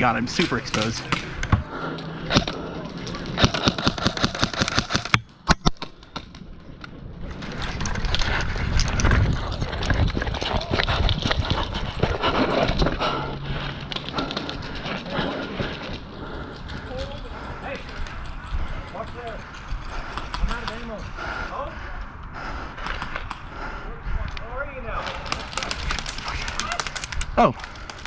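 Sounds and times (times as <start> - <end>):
airsoft guns firing: 3.3 - 5.8.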